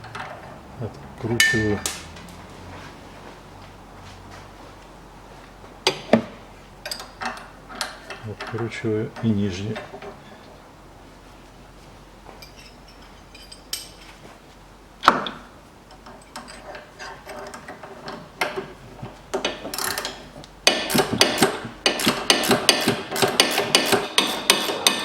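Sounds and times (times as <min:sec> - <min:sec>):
metal hand tools clicking: 0:19.8 - 0:25.0.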